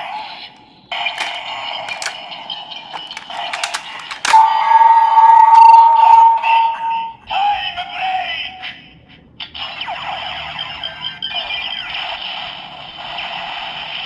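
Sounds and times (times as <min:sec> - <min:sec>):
sharp click: 0:01.2 - 0:02.2, 0:03.0 - 0:04.5
toy electronic sound effects and music: 0:01.2 - 0:02.2
loud held electronic tone: 0:04.3 - 0:07.3.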